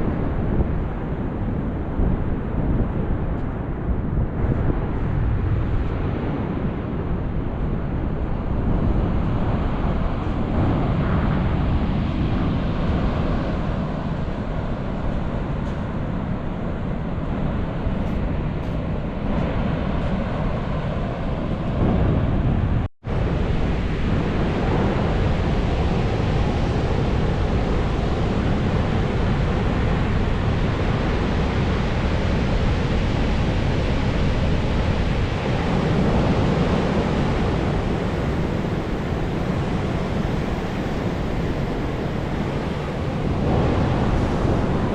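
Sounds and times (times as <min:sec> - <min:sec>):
wind rumbling on microphone: 0:00.0 - 0:44.9
ocean surf washing: 0:04.6 - 0:44.9.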